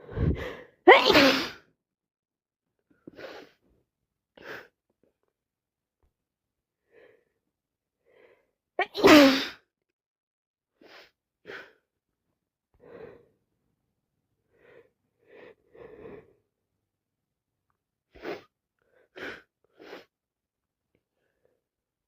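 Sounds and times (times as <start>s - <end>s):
person breathing and sniffling: 0.0s - 1.6s, 3.0s - 3.6s, 18.1s - 20.2s.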